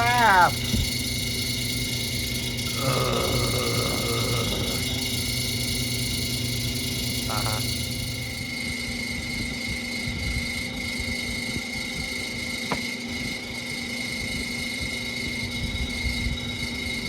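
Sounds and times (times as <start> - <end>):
low hum: 0.0 - 8.7
fan motor screeching: 0.0 - 17.0.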